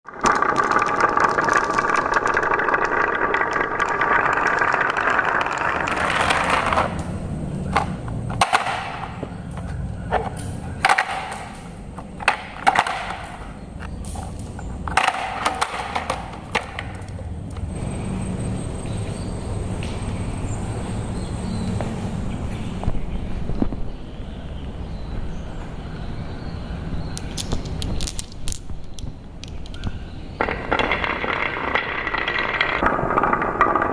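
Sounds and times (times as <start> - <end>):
marbles clacking on wood: 0.1 - 17.9, 27.1 - 33.9
marbles rolling on wooden track: 0.1 - 19.0, 27.2 - 33.9.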